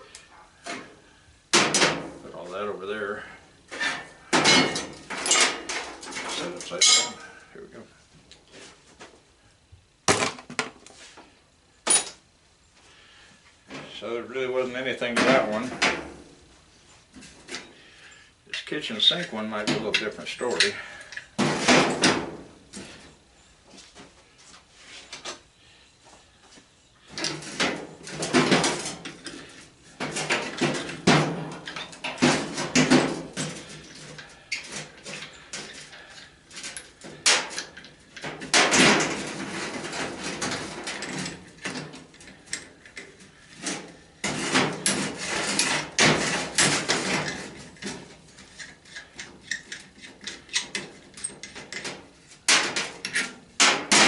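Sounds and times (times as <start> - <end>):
metal faucet parts clattering: 6.3 - 7.2.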